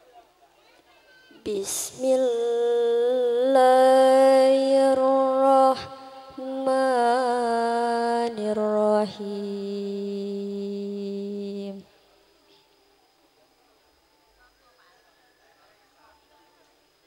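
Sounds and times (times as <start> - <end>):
person reciting melodically: 1.4 - 11.9.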